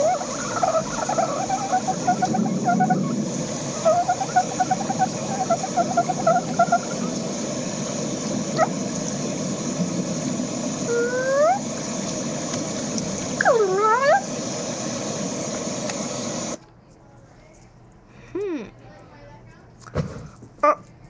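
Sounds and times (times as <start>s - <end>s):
rapid high-pitched pips: 0.0s - 7.5s
rising whistle-like glide: 0.0s - 9.0s, 10.8s - 11.8s, 13.4s - 14.7s
rain hissing: 0.0s - 16.6s.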